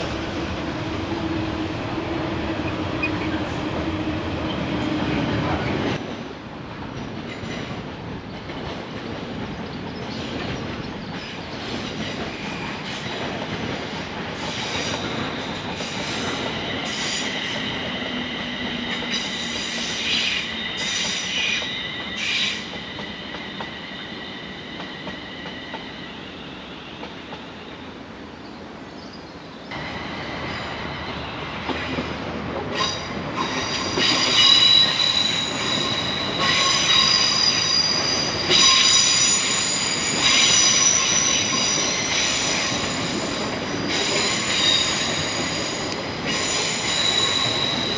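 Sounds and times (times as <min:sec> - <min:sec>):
train rumble: 0:00.0 - 0:28.0
train wheels squealing: 0:09.6 - 0:27.9, 0:32.8 - 0:47.9.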